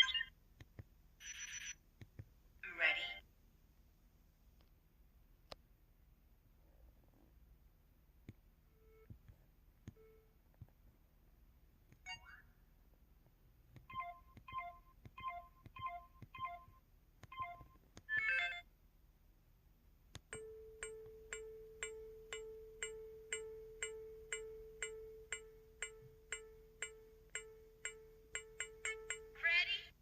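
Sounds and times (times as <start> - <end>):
steady tone with ticks: 13.7 - 18.4, 20.1 - 29.8.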